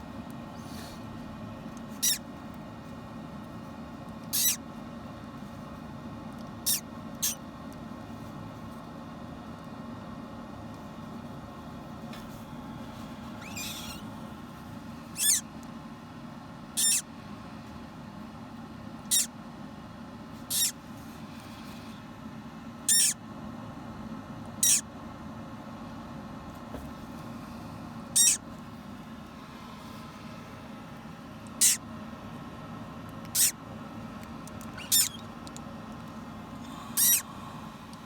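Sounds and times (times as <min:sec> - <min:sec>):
steady low hum: 0:00.0 - 0:38.0
parrot chick peeping: 0:02.0 - 0:02.2, 0:04.3 - 0:04.6, 0:06.6 - 0:07.4, 0:13.4 - 0:14.0, 0:15.1 - 0:15.5, 0:16.7 - 0:17.1, 0:19.0 - 0:19.3, 0:20.5 - 0:20.8, 0:22.9 - 0:23.2, 0:24.6 - 0:24.8, 0:28.1 - 0:28.4, 0:31.5 - 0:31.8, 0:33.2 - 0:33.6, 0:34.6 - 0:35.6, 0:36.9 - 0:37.3.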